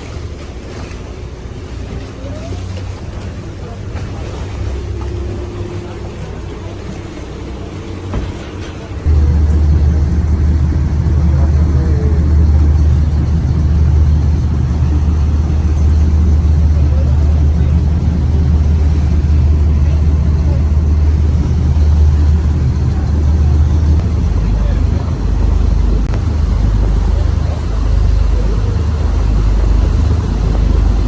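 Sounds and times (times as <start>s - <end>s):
motorboat engine rumble: 0.0s - 31.0s.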